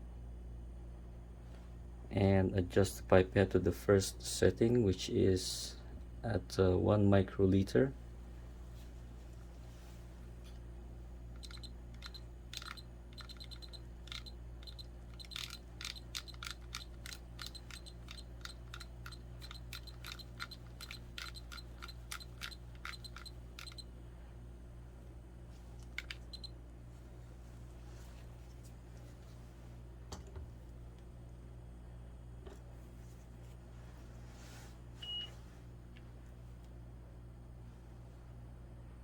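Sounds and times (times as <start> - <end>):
steady low hum: 0.0 - 39.0
pipette buttons clicking: 11.4 - 23.8, 25.8 - 26.5.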